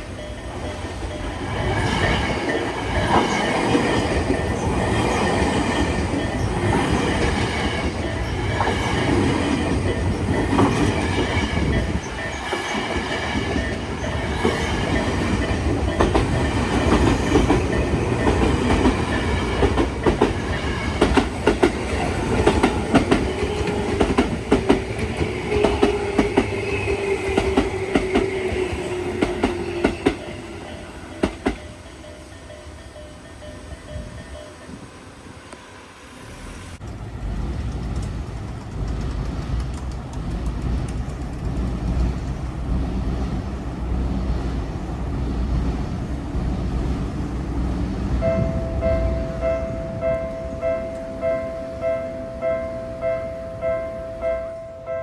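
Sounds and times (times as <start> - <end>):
train rumbling past: 0.0 - 55.0
wheels clacking over rail joints: 0.1 - 33.2, 36.8 - 45.1.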